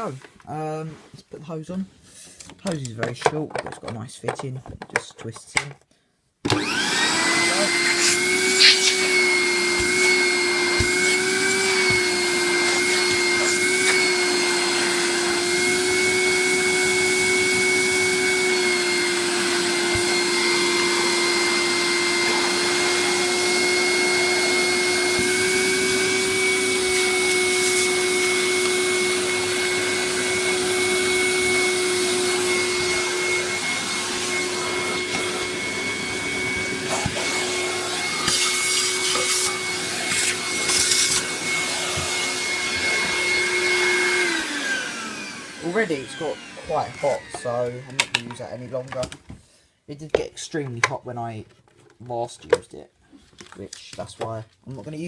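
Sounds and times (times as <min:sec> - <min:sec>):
vacuum cleaner humming and whining: 0:06.4 - 0:49.2.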